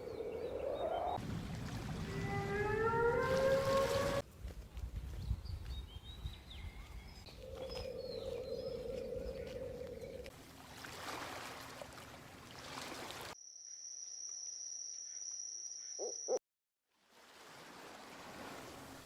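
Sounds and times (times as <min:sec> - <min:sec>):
owl hooting: 0:15.8 - 0:16.4.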